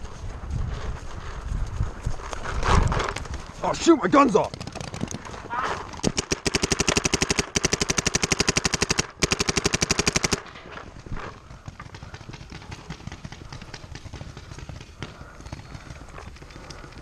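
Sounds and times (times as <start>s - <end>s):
paintball marker firing rapidly: 4.4s - 10.4s, 11.4s - 16.9s.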